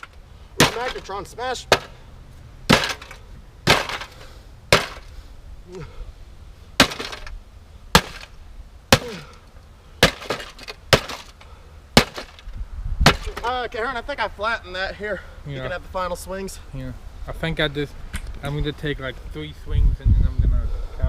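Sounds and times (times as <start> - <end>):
sledgehammer striking metal: 0.0 - 2.0, 2.7 - 5.1, 6.8 - 7.3, 7.9 - 8.3, 8.9 - 9.3, 10.0 - 11.4, 12.0 - 12.4, 13.0 - 13.5.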